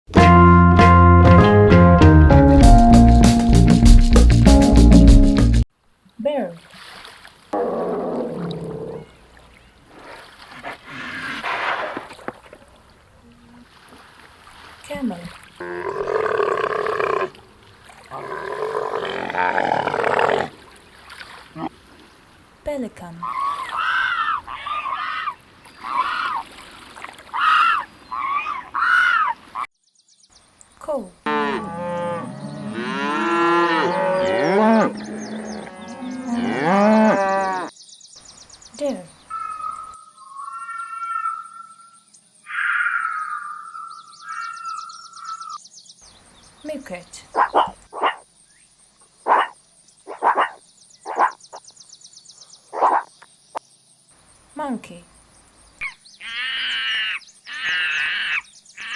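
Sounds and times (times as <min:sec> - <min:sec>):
pelican calling: 0:23.2 - 0:26.5, 0:27.3 - 0:29.7, 0:38.9 - 0:41.7, 0:47.2 - 0:48.2, 0:55.8 - 0:58.9.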